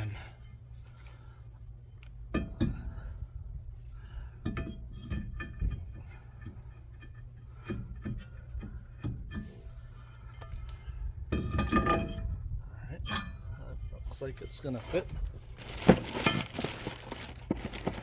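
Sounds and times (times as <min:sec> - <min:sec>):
low hum: 0:00.0 - 0:18.0
metal parts clinking and scraping: 0:15.6 - 0:18.0.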